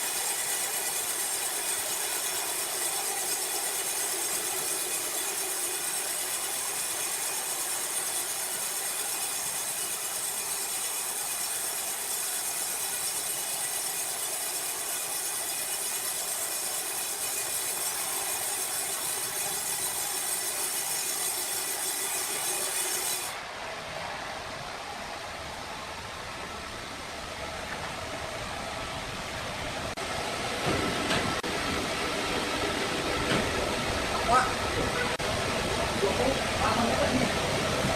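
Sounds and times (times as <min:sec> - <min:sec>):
sawmill machinery whining: 0:00.0 - 0:23.5
quieter mechanical noise: 0:00.0 - 0:37.9.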